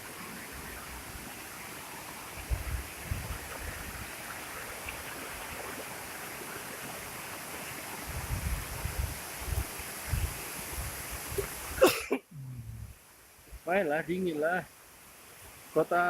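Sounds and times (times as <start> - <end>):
bumps on microphone: 12.3 - 12.9.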